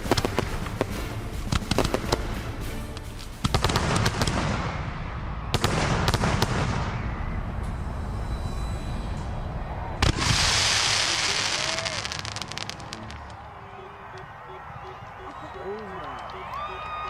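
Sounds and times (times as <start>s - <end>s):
firework cracks and bangs: 0.0s - 2.4s, 3.4s - 7.2s, 10.0s - 13.4s.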